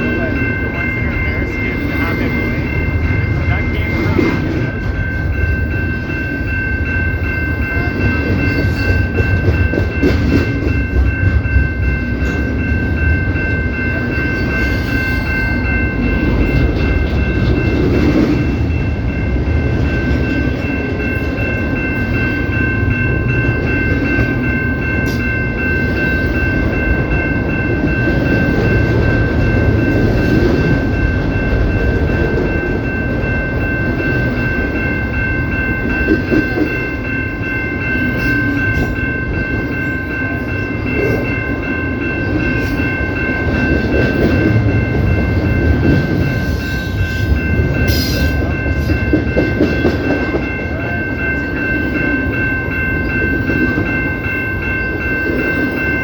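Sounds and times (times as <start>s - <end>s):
high-pitched ringing tones: 0.0s - 56.0s
train wheels rumbling on rails: 0.0s - 56.0s.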